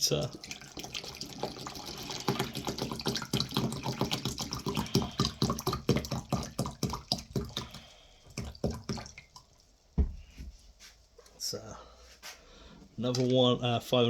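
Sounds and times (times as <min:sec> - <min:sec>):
water gurgling into wet vac: 0:00.0 - 0:09.6.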